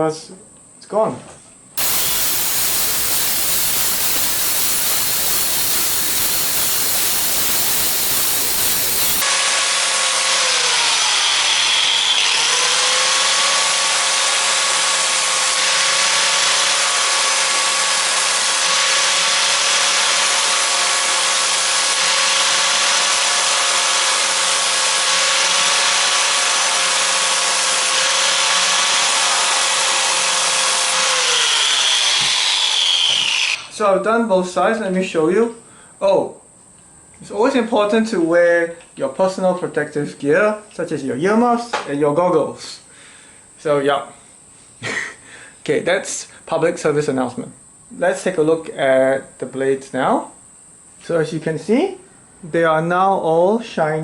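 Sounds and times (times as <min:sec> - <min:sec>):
electric grinder grinding metal: 0:01.8 - 0:09.2, 0:27.8 - 0:33.7.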